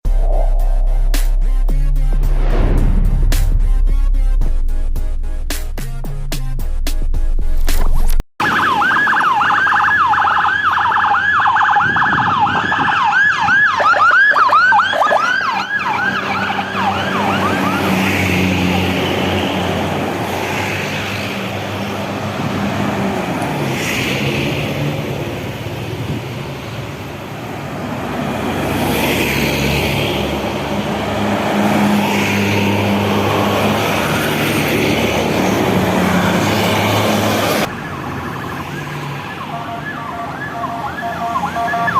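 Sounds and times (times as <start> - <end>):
heavy vehicles droning past: 0.0 - 7.3, 15.4 - 41.9
siren yelp: 8.4 - 18.5, 35.8 - 41.9.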